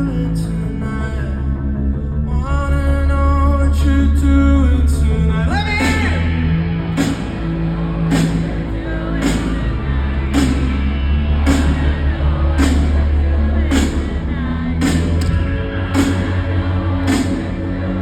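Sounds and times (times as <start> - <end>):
crowd singing and shouting: 0.0 - 18.0
sustained bass: 0.0 - 18.0
steady drum beat: 6.9 - 18.0.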